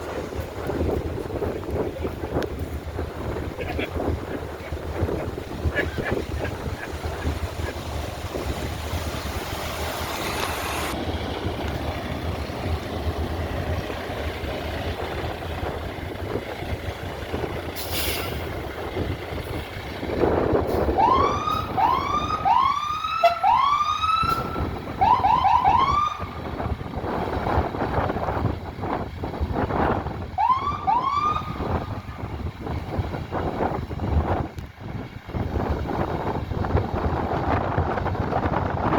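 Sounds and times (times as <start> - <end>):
steady low rumble: 0.0 - 10.1, 10.9 - 22.9
short hiss: 17.8 - 18.4
fire engine siren whooping: 20.2 - 27.4, 29.4 - 33.0.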